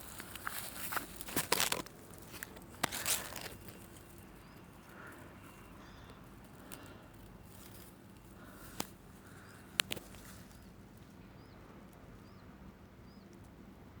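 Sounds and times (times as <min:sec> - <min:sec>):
sharp clicks: 0:09.8 - 0:10.2.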